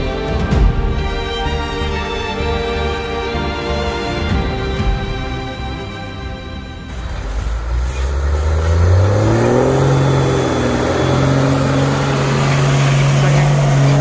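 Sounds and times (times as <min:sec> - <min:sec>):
engine revving: 0:05.4 - 0:14.0.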